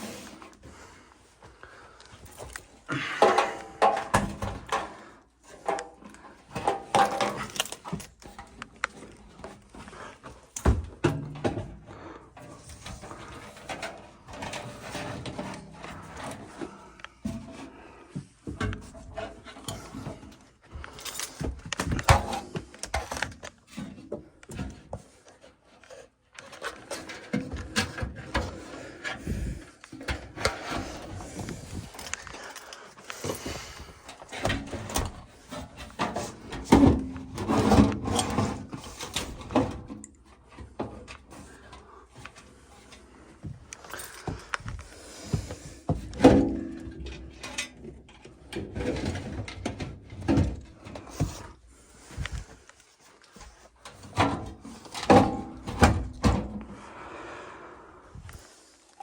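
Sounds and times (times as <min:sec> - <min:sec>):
knocks and clatter of hand work: 0:02.3 - 0:25.4.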